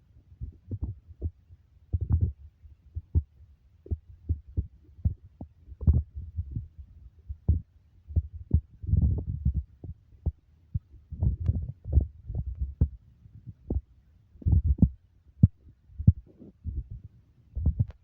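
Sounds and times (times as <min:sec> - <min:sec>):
muffled low thumps: 0:00.4 - 0:02.4, 0:03.0 - 0:18.0.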